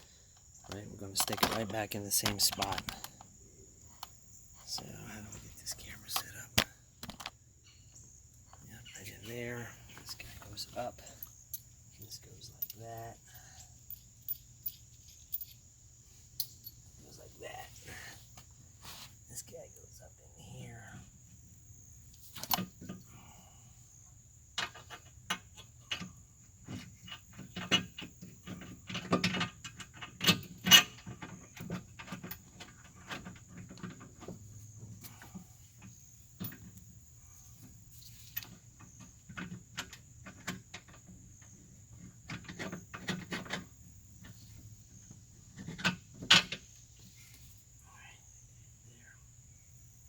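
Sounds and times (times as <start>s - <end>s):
metallic clicks and clanks of parts: 0.6s - 3.3s, 12.6s - 13.2s, 13.9s - 15.6s, 16.4s - 16.8s, 22.3s - 23.0s, 27.6s - 34.0s.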